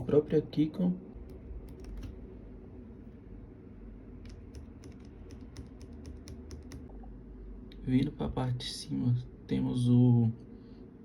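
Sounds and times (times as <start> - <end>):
keyboard key clicks: 1.6 - 2.2, 4.2 - 6.9.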